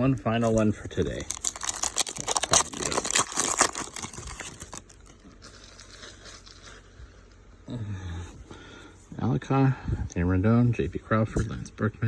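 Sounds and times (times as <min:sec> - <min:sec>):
cards rustling: 0:00.2 - 0:06.9
wrapper tearing and crinkling: 0:00.4 - 0:06.8.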